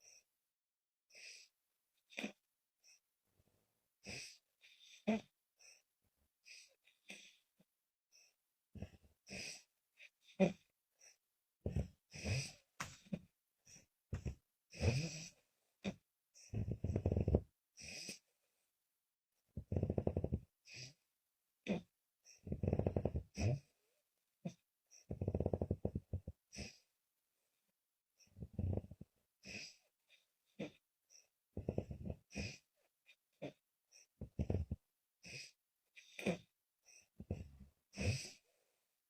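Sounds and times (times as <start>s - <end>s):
woman snoring: 11.7s - 13.0s, 14.1s - 18.2s, 19.6s - 21.0s, 21.6s - 23.7s, 24.5s - 26.8s, 28.4s - 29.8s, 30.6s - 32.7s, 34.2s - 38.4s.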